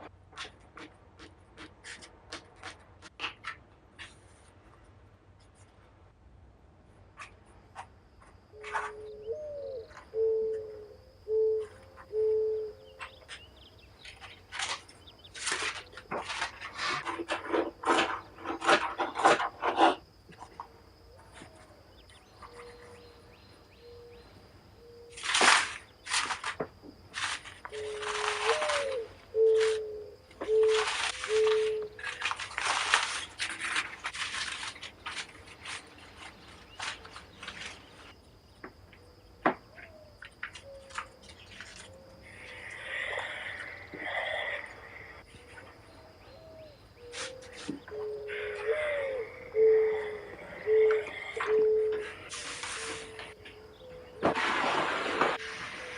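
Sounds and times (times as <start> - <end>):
rustling noise: 0.0 - 6.1, 13.2 - 20.5, 25.1 - 38.2, 52.0 - 53.5, 54.2 - 55.9
dove cooing: 8.5 - 25.2, 27.6 - 33.2, 39.7 - 54.3, 55.3 - 55.9.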